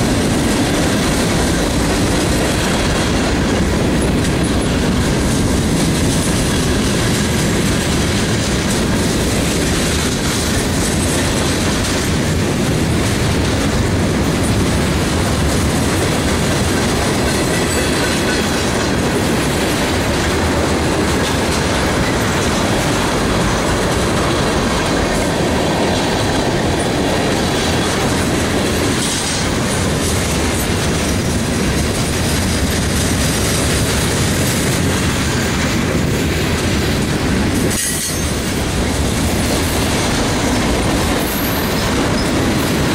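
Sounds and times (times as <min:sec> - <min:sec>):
clickety-clack over rail joints: 0:00.0 - 0:42.9
train wheels rumbling on rail: 0:00.0 - 0:42.9.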